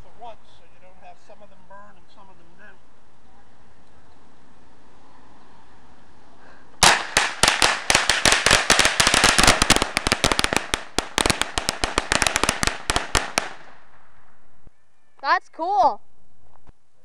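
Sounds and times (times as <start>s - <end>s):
fireworks cracking: 6.8s - 14.4s.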